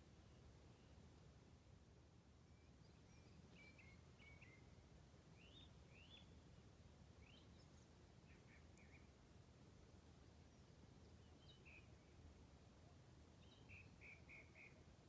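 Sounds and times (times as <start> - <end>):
bird chirping: 2.6 - 4.8, 5.4 - 6.4, 7.2 - 9.2, 10.4 - 12.1, 13.4 - 14.9.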